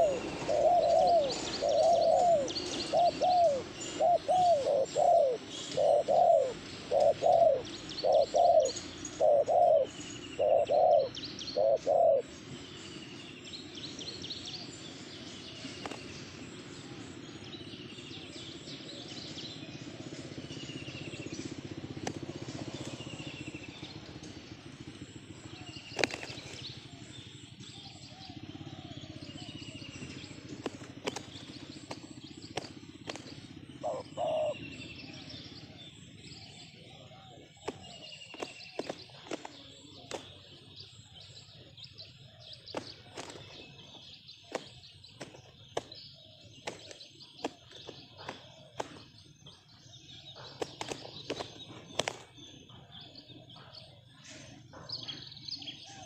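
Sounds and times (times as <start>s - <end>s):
dove cooing: 0.0s - 13.3s, 25.1s - 56.0s
small birds chirping: 0.0s - 56.0s.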